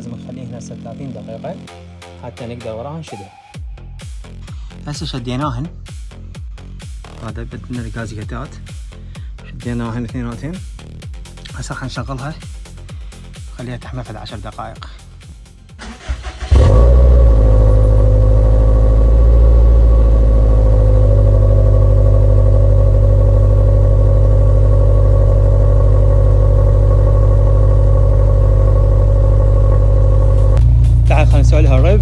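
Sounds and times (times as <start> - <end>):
loud car engine idling: 15.8 - 32.0.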